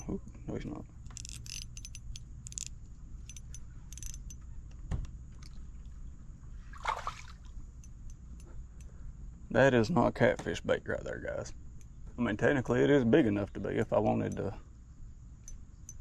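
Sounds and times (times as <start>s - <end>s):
fishing tackle clicking and jingling: 1.1s - 4.8s, 7.8s - 9.0s, 13.8s - 14.6s, 15.4s - 16.0s.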